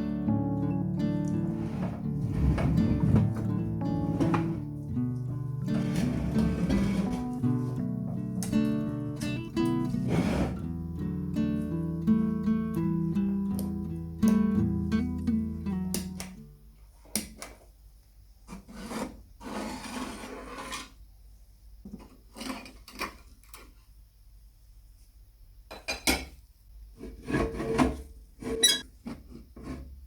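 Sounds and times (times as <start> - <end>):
acoustic guitar music: 0.0 - 16.5
scrapes and rubs: 1.4 - 4.6, 5.7 - 7.4, 10.1 - 10.6, 18.5 - 21.0.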